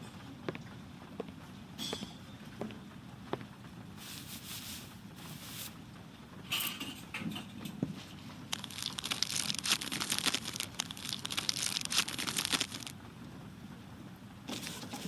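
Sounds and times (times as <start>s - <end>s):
low background noise: 0.0s - 15.0s
fireplace crackling: 3.8s - 6.3s, 8.2s - 13.0s.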